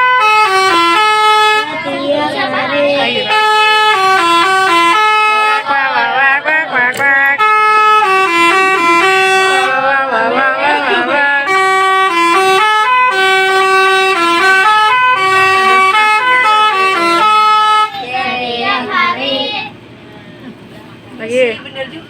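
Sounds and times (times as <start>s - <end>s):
multi-tone bus horn tune: 0.0s - 20.0s
voices shouting: 0.9s - 12.6s, 14.9s - 19.9s.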